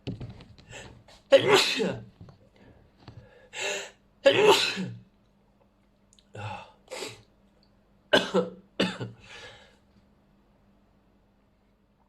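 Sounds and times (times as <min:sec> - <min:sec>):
person sneezing: 0:01.3 - 0:02.1, 0:03.6 - 0:05.0, 0:06.9 - 0:07.3.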